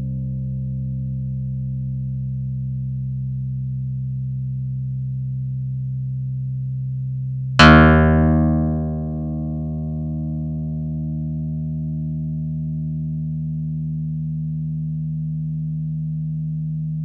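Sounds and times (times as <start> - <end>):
synthesizer bass notes: 7.6 - 13.3.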